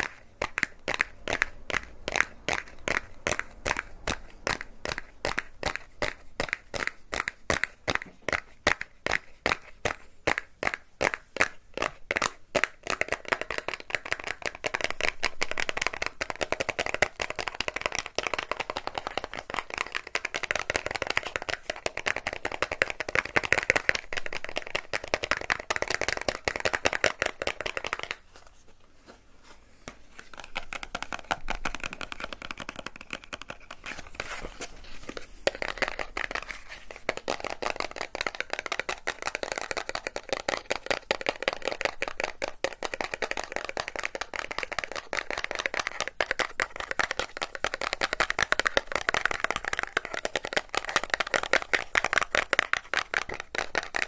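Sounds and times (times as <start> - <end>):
close crackling and rustling: 22.7 - 40.5.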